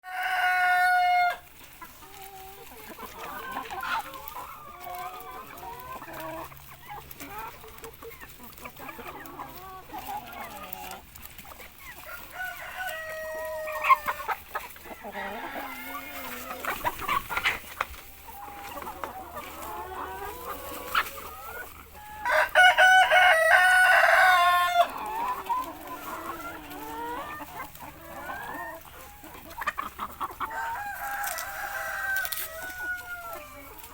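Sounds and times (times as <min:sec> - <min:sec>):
rooster crowing: 0:00.0 - 0:01.4, 0:12.0 - 0:14.0, 0:22.2 - 0:25.0, 0:30.5 - 0:33.6
chickens clucking: 0:00.0 - 0:33.9.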